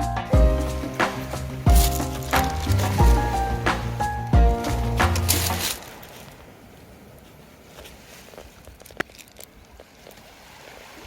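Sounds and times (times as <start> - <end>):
background music with drum beat: 0.0 - 5.7.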